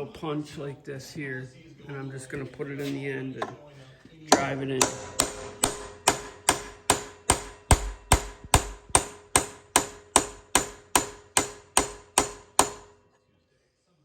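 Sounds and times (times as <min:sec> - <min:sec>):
mallet tapping steel punch: 0:04.3 - 0:13.0.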